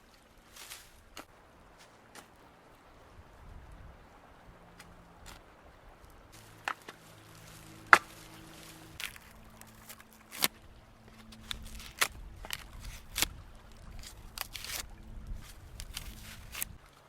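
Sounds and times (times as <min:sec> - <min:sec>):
bark peeling with sharp cracks: 0:07.8 - 0:16.8.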